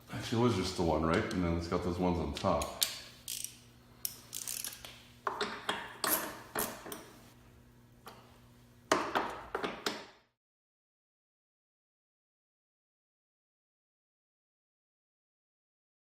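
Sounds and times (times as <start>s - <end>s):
socket ratchet clicking: 2.6s - 4.9s.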